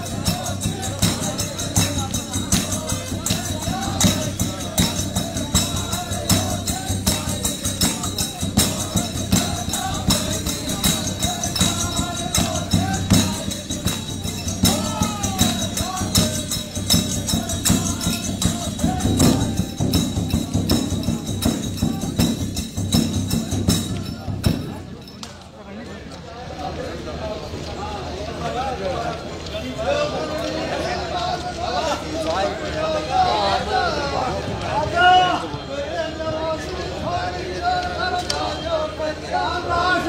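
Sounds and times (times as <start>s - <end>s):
fast steady percussion: 0.0s - 25.2s.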